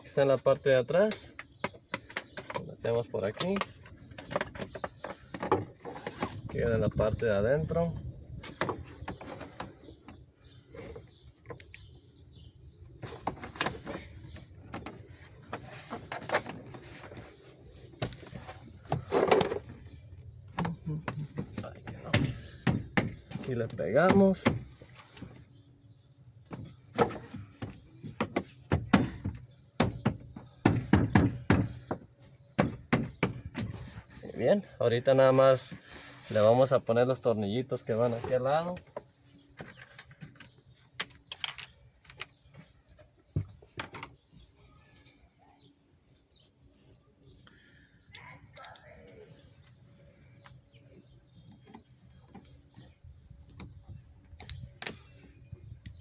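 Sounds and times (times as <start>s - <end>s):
plastic panels knocking: 26.5s - 33.9s.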